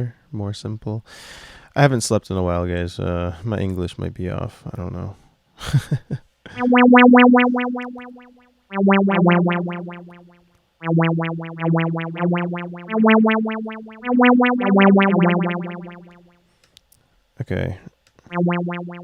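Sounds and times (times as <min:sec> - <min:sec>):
pulsing low synth notes: 0:06.6 - 0:16.4, 0:18.3 - 0:19.0.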